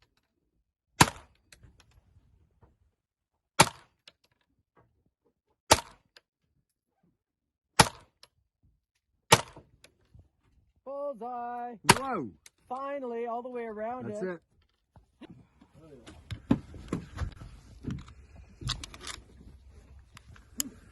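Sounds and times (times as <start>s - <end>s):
pistol shots: 11.9s - 12.2s.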